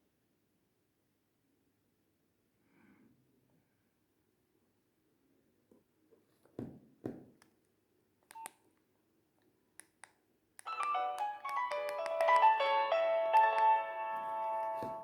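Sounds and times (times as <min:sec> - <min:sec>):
keypad clicks: 0:09.8 - 0:12.7
electronic ringtone melody: 0:10.7 - 0:15.0.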